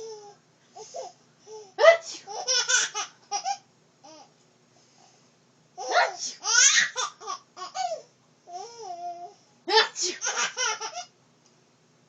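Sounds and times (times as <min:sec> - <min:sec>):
baby giggling: 0:02.3 - 0:04.2, 0:10.1 - 0:11.1.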